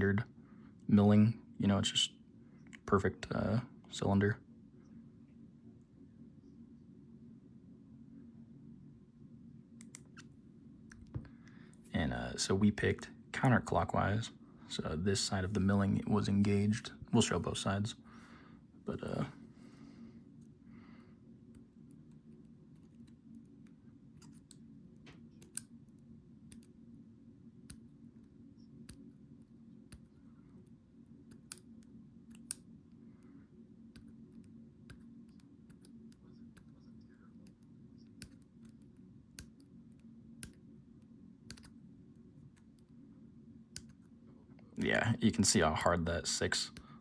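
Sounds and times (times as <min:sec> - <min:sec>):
small metal clicks: 0:41.5 - 0:41.7.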